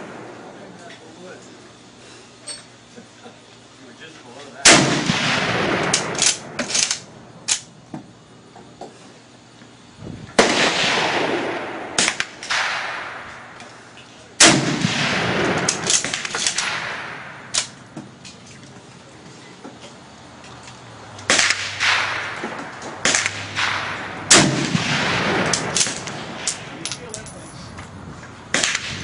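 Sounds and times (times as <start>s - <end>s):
rifle shots with echo: 4.6s - 7.7s, 10.4s - 13.6s, 14.4s - 17.8s, 21.3s - 26.8s, 28.5s - 29.0s
sharp cracks and clicks: 4.6s - 7.7s, 12.0s - 18.6s, 20.5s - 27.4s, 28.5s - 29.0s.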